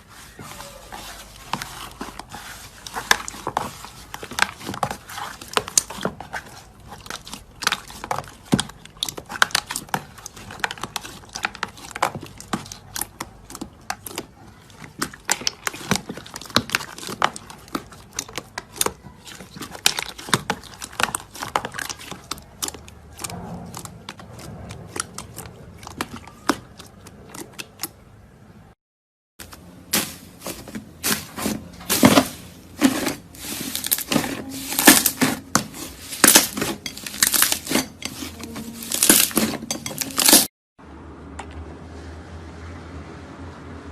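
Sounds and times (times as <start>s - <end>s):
crunchy slime crackling: 0.0s - 28.0s, 29.4s - 40.5s.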